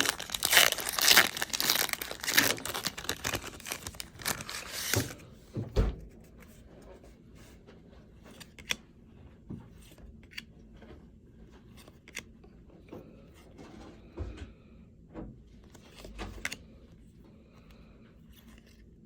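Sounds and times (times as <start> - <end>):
trading cards being handled: 0.0 - 5.2.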